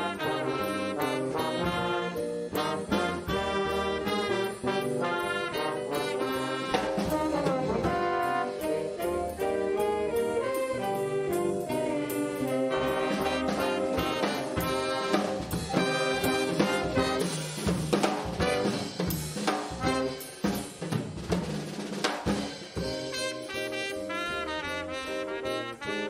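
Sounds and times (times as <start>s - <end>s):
trombones and trumpets playing: 0.0s - 20.6s, 22.8s - 26.0s.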